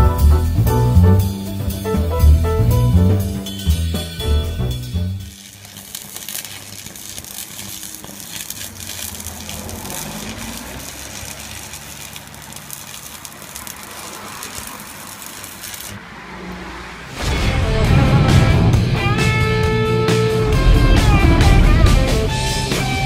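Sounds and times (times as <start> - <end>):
welding arc crackling sizzle: 0.0 - 16.1, 17.1 - 23.0
low hum: 16.3 - 23.0.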